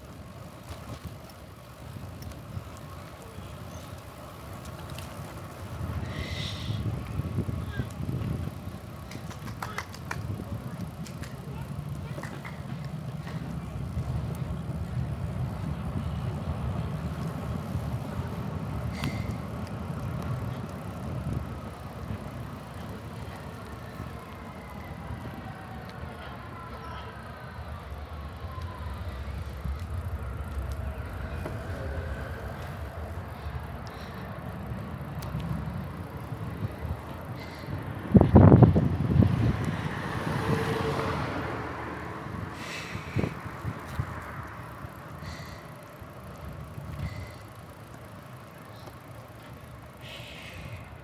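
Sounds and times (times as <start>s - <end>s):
bicycle tyre and road noise: 0.0s - 51.0s
faint passing vehicle: 0.0s - 51.0s
wind rumbling on microphone: 4.8s - 25.8s, 35.5s - 45.6s.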